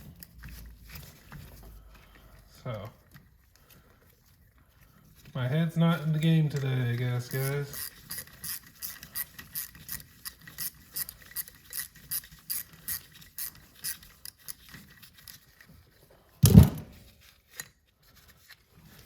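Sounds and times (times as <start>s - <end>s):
ratchet wrench clicking: 7.4s - 14.0s
heavy knock: 16.4s - 16.9s.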